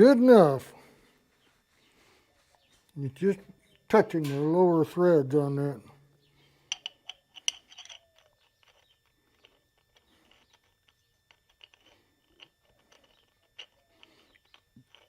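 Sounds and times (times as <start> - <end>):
faint irregular ticks: 6.4 - 15.0
handling clicks and crackles: 6.4 - 15.0.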